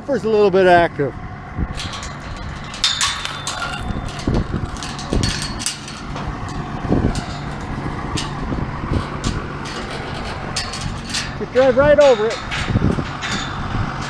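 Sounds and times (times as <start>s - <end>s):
clicks and rattles: 1.7s - 14.0s.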